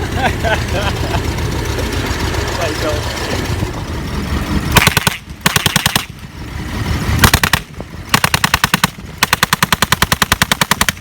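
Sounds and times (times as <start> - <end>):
machine gun bursts: 4.8 - 6.1, 7.2 - 11.0.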